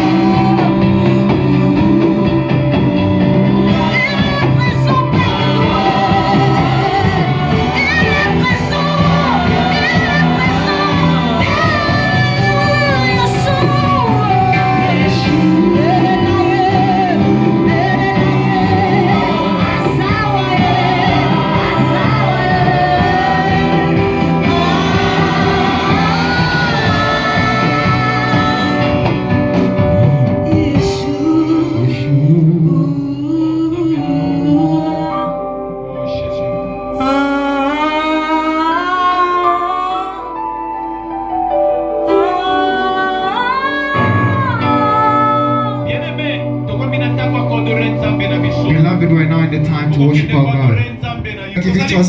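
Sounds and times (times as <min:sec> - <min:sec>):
person singing: 0:00.0 - 0:41.2
gospel band playing: 0:00.0 - 0:52.0
congregation shouting: 0:03.8 - 0:14.7, 0:18.6 - 0:29.5.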